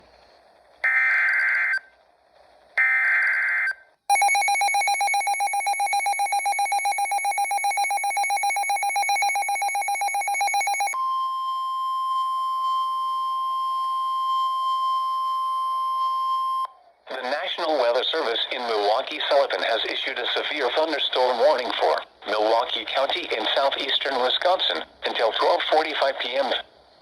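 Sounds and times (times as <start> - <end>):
rapidly pulsing electronic alarm: 4.1 - 11.0
steady warning alarm tone: 4.1 - 11.0.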